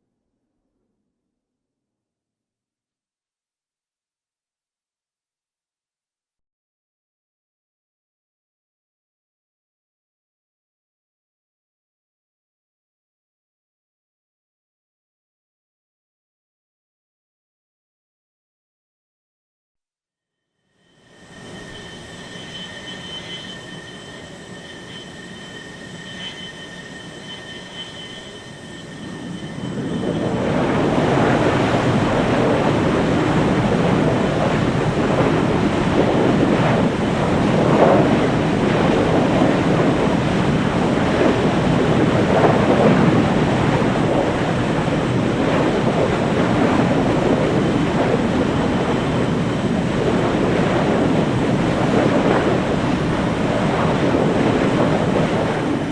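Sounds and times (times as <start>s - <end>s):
jet engine starting up: 20.9s - 55.9s.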